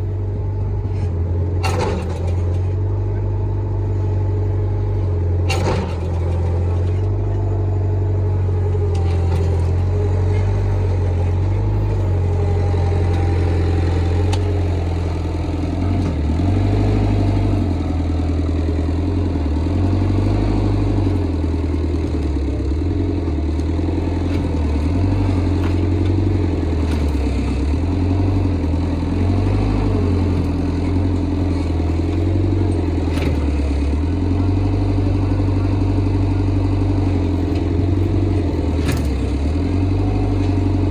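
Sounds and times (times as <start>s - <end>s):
vehicle engine running: 0.0s - 40.9s.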